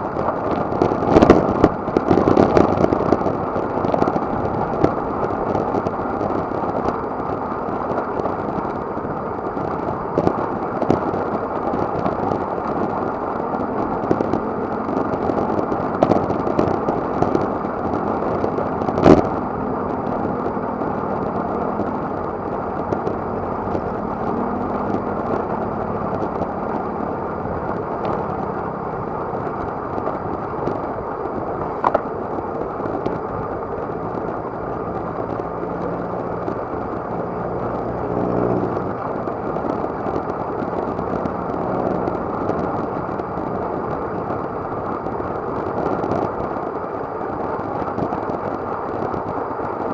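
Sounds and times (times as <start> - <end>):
wind rush over microphone: 0.0 - 49.9
small clicks: 31.6 - 32.1.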